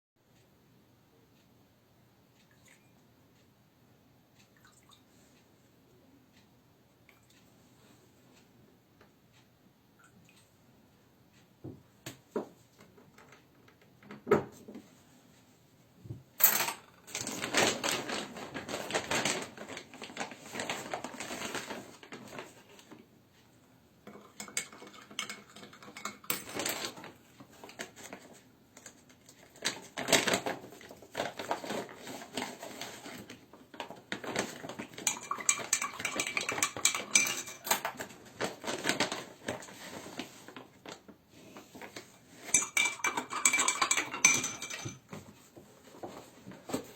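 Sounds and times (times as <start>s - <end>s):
hard objects clicking and clattering: 16.4s - 22.6s, 24.0s - 41.0s, 41.6s - 45.3s.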